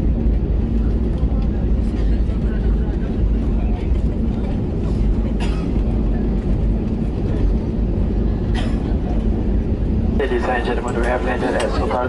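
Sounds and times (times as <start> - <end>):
aircraft cabin low roar: 0.0 - 12.0
faint hum: 7.4 - 12.0.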